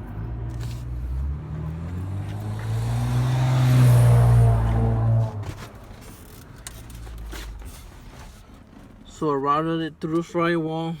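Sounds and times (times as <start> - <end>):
vehicle engine passing by: 0.0 - 5.6.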